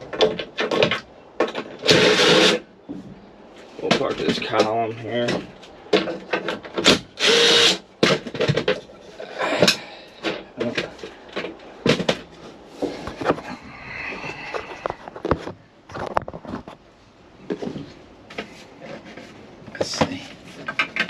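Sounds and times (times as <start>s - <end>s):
plastic and metal parts knocking: 8.0s - 8.9s, 19.8s - 21.0s.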